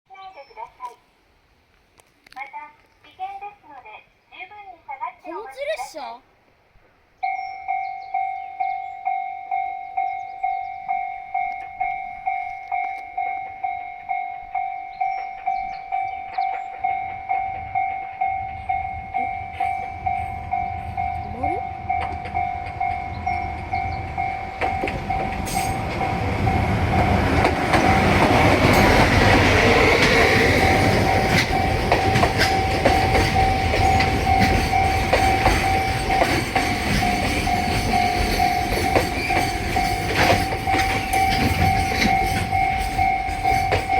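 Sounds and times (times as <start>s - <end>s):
level crossing bell chiming: 7.2s - 27.2s
train running on rails: 7.2s - 43.9s.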